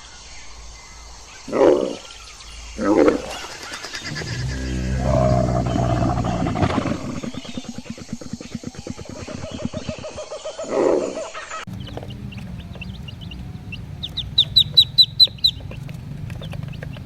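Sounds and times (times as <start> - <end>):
low pulsing rattle: 2.2 - 10.2, 11.7 - 17.0
animal deep call: 2.8 - 17.0.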